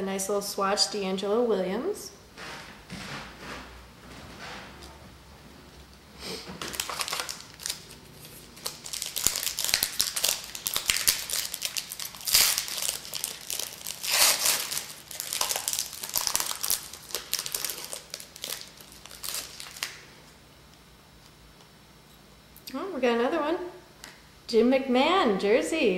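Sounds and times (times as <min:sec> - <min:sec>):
wrapper crinkling and tearing: 0:06.6 - 0:20.0.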